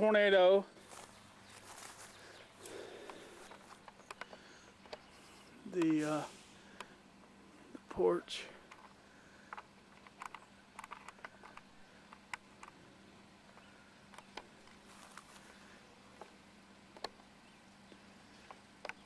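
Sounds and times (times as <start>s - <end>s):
faint steady hum: 0.0s - 19.0s
faint hiss: 4.3s - 10.8s.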